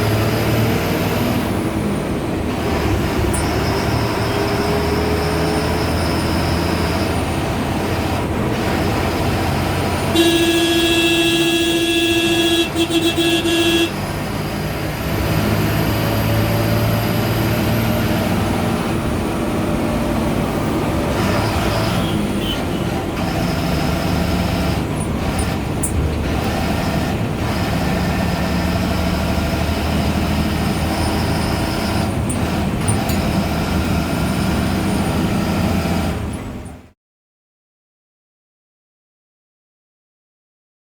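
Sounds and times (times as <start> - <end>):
bus diesel engine running: 0.0 - 37.0
bus horn: 9.2 - 14.3, 21.5 - 24.4.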